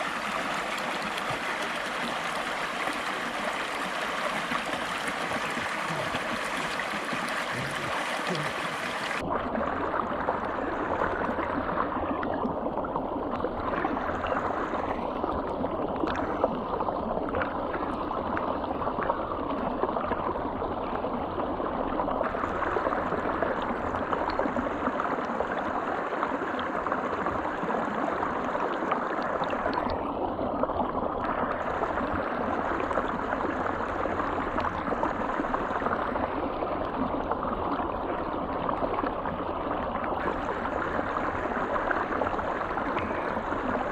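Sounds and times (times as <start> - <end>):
river water rushing: 0.0 - 9.2.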